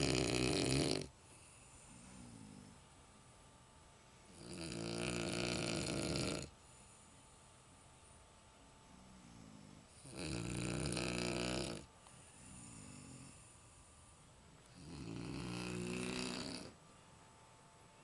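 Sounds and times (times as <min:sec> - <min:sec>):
person snoring heavily: 0:00.0 - 0:02.8, 0:04.3 - 0:06.5, 0:09.2 - 0:13.5, 0:14.7 - 0:16.8
quiet breathing: 0:00.0 - 0:17.3.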